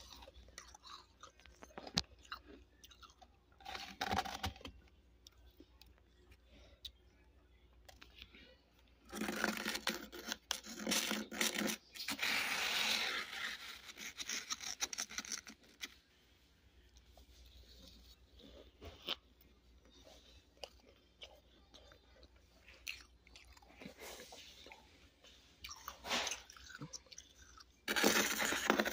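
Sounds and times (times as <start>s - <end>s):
frost being scraped and crunched: 9.1s - 16.0s, 27.9s - 28.9s.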